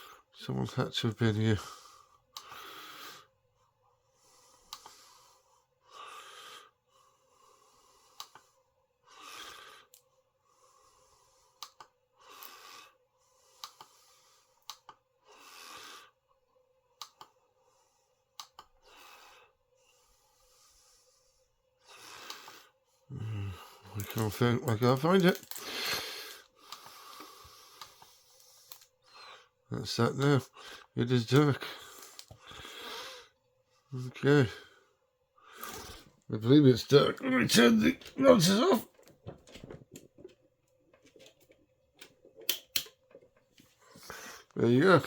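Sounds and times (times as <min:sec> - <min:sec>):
person breathing heavily: 0:01.6 - 0:03.4, 0:04.1 - 0:11.6, 0:18.8 - 0:24.3, 0:25.0 - 0:31.0, 0:31.6 - 0:36.2, 0:43.8 - 0:44.6.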